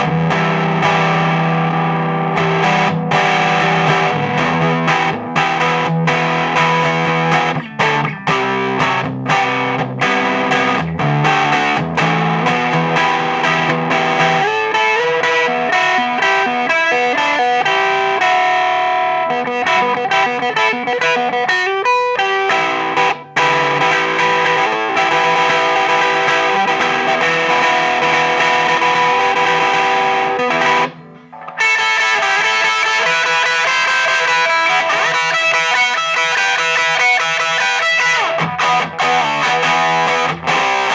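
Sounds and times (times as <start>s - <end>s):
distorted electric guitar: 0.0s - 40.9s.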